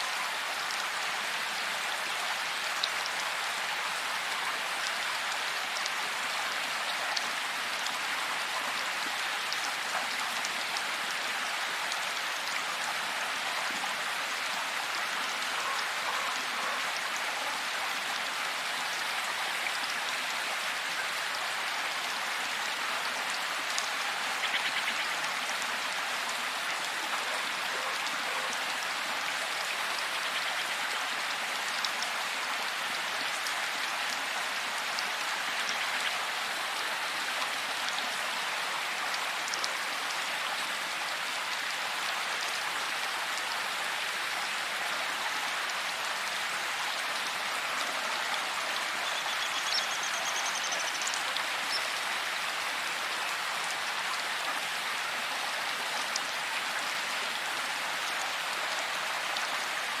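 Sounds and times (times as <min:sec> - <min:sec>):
faint high chirp: 0:49.0 - 0:51.9.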